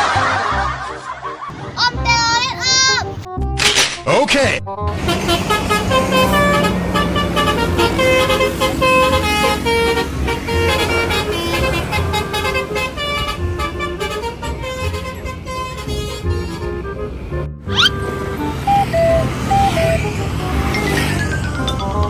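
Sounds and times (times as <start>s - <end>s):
bus horn tooting melody: 4.7s - 22.0s.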